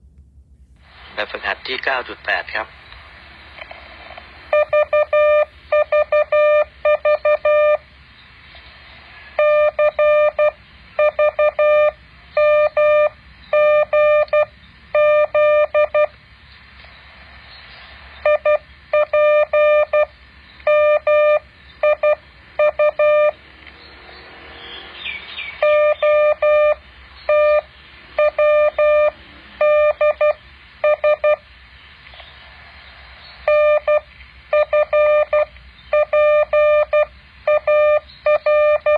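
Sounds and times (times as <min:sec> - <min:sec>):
faint hiss: 0:00.1 - 0:04.5, 0:31.4 - 0:34.5
morse code beeps: 0:04.5 - 0:07.8, 0:09.4 - 0:16.2, 0:18.2 - 0:23.4, 0:25.6 - 0:31.5, 0:33.4 - 0:38.9.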